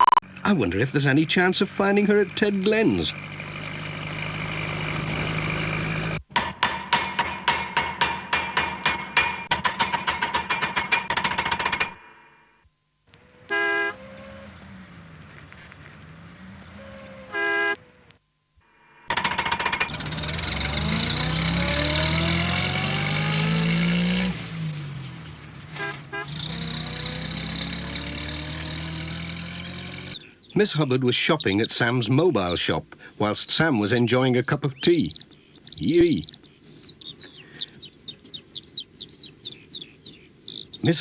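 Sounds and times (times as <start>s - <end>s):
steady engine hum: 0.3s - 41.0s
sharp ringing knocks: 6.3s - 12.1s, 19.1s - 21.6s.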